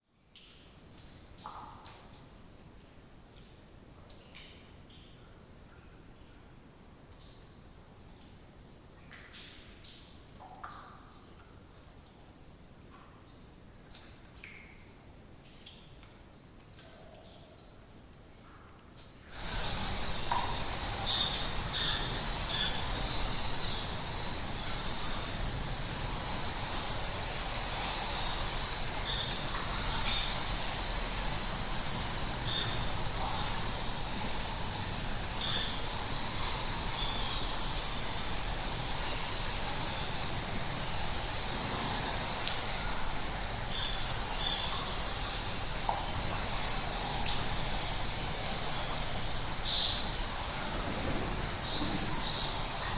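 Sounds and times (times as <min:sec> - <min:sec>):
bats chattering and squeaking: 0:19.3 - 0:52.9.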